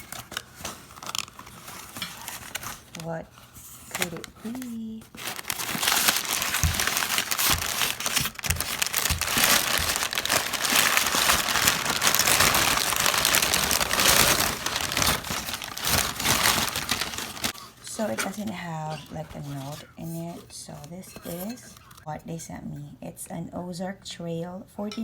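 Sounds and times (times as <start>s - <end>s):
packaging material crinkling: 0.0s - 17.6s.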